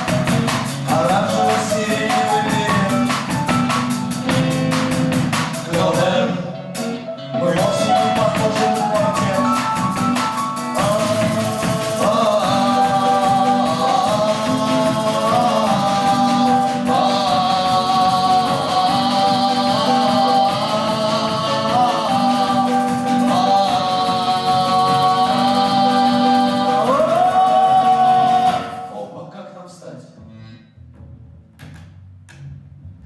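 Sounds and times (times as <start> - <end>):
keyboard chords: 0.0 - 28.9
drums: 0.0 - 29.0
double bass: 7.4 - 28.6, 30.2 - 33.0
shaker: 8.0 - 28.8.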